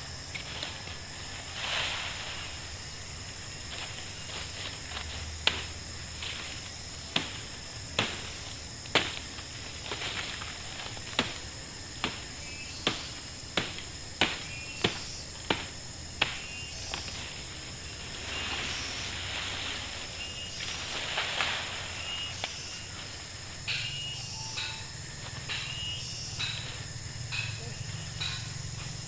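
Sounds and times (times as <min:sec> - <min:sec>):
high insect drone: 0:00.0 - 0:29.0
sharp chopping strikes: 0:05.4 - 0:05.7, 0:07.1 - 0:10.1, 0:11.0 - 0:17.2.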